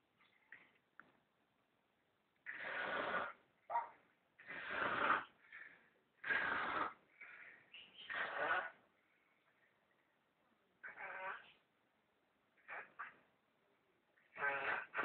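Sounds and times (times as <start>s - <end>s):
snoring: 2.4s - 3.4s, 4.4s - 7.4s, 8.0s - 8.8s, 14.3s - 15.0s.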